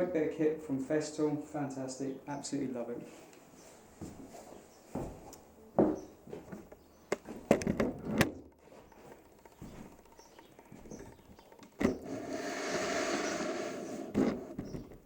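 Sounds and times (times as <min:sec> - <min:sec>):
handling clicks and knocks: 0:06.4 - 0:12.0
dust extractor running: 0:08.6 - 0:14.5.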